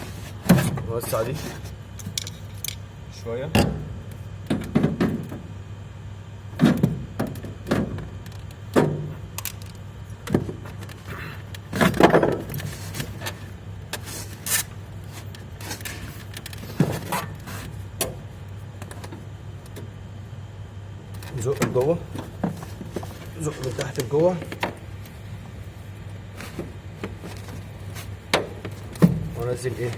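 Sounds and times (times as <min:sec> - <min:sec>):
low steady hum: 0:00.0 - 0:29.9.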